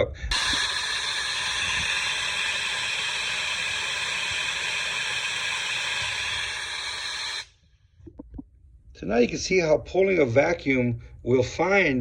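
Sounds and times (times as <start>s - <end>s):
vacuum tester hissing: 0.3s - 7.6s.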